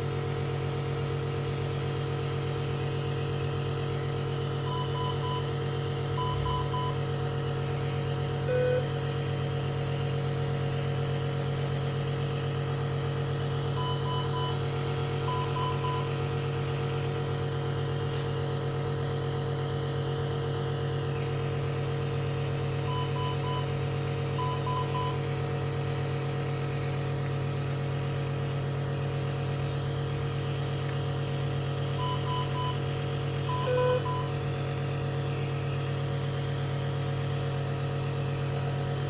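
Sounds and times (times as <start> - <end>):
mechanical equipment hum: 0.0 - 39.0
longer lower beep: 4.6 - 7.1, 8.4 - 9.0, 13.7 - 16.2, 22.8 - 23.8, 24.4 - 25.2, 32.0 - 32.9, 33.5 - 34.4
patient monitor alarm beeps: 4.6 - 7.1, 8.4 - 9.0, 13.7 - 16.2, 22.8 - 23.8, 24.4 - 25.2, 32.0 - 32.9, 33.5 - 34.4.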